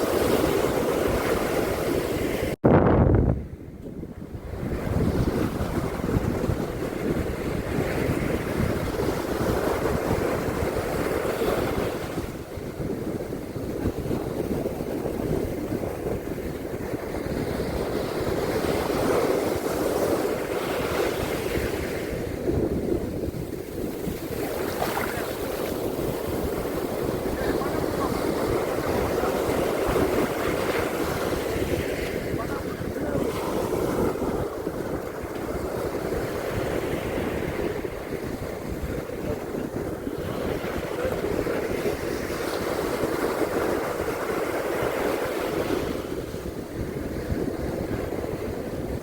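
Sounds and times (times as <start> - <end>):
ocean surf on beach: 0.0 - 49.0
wind on microphone: 0.0 - 49.0.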